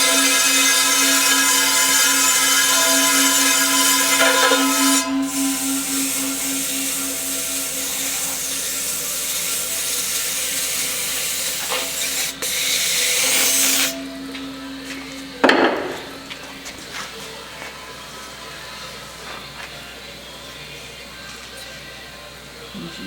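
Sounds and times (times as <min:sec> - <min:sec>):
power tool running: 0:00.0 - 0:16.8.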